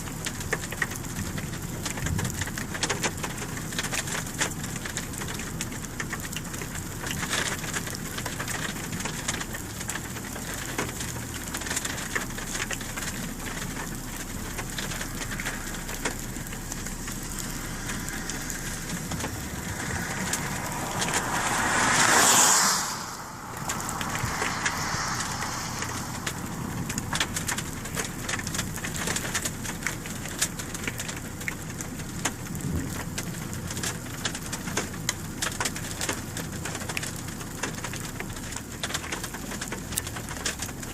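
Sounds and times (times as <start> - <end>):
rain on a vehicle: 0.0 - 40.9
rushing whoosh: 14.6 - 29.4.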